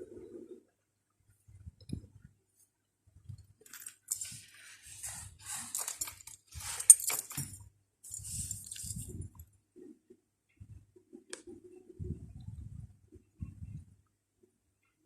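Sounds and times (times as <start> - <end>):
brush scratching on paper: 4.5 - 5.8.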